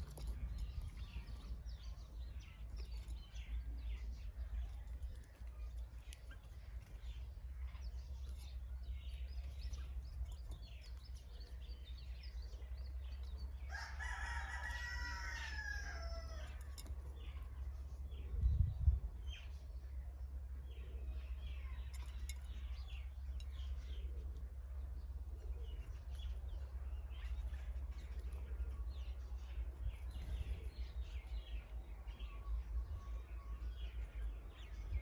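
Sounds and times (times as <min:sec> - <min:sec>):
small birds chirping: 0:00.0 - 0:35.0
steady low rumble: 0:00.0 - 0:35.0.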